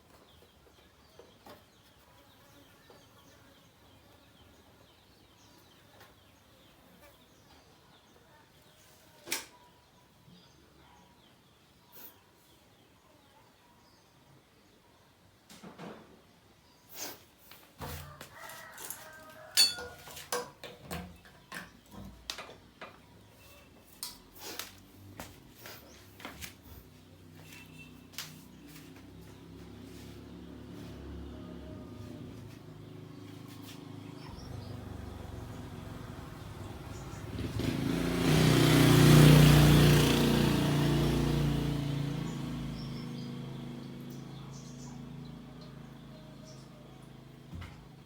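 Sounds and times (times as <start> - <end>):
metal tools clinking and knocking: 19.6 - 21.8
two-stroke motorcycle engine: 34.3 - 45.9.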